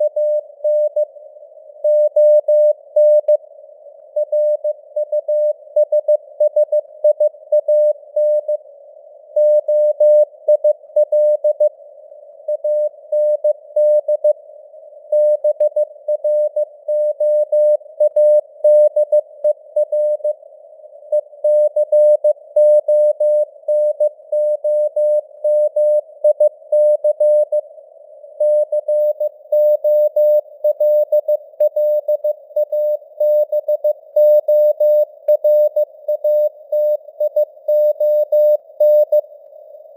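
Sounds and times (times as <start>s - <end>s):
soft radio noise hiss: 0.0s - 1.8s, 2.7s - 9.4s, 11.7s - 13.7s, 14.4s - 15.1s, 19.3s - 21.4s, 27.6s - 39.9s
morse code beeps: 28.4s - 39.2s.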